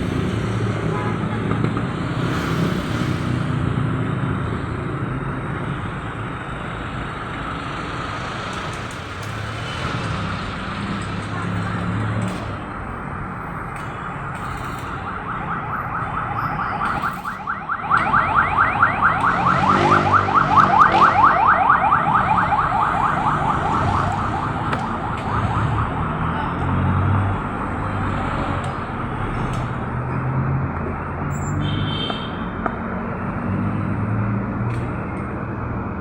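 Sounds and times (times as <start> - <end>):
car alarm warbling chirps: 15.0 - 26.0.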